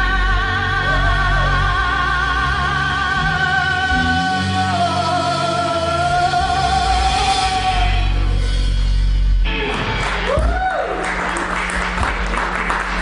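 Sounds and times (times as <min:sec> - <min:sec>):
singer holding long note: 0:00.0 - 0:08.4
rock band playing: 0:04.0 - 0:13.0.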